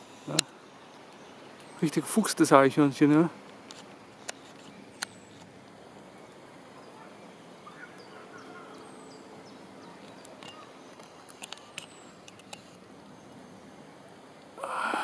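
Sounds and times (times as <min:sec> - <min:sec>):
faint short bird calls: 0:06.8 - 0:09.1.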